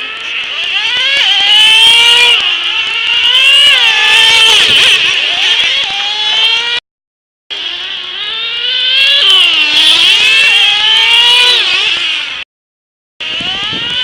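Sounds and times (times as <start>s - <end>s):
model car engines whining: 0.0s - 6.8s, 7.5s - 12.4s, 13.2s - 14.0s.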